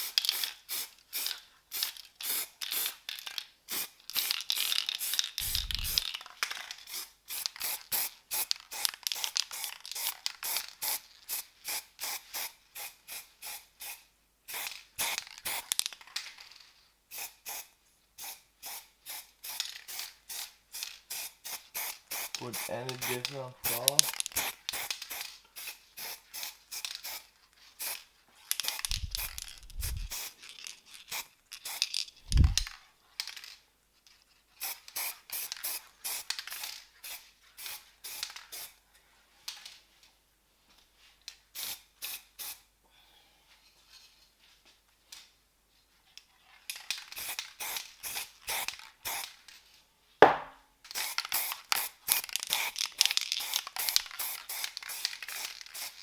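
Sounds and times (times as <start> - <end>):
spray can hissing: 5.0 - 6.1, 21.1 - 27.2, 28.6 - 30.4, 31.1 - 32.7, 50.2 - 52.8, 53.4 - 56.0
dull thumps: 50.2 - 50.5
sharp knock: 50.2 - 50.6.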